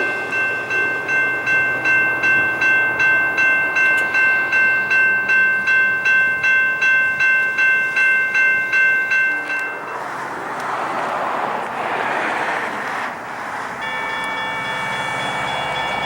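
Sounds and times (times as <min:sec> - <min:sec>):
crossing bell ringing: 0:00.0 - 0:10.2, 0:13.8 - 0:16.0.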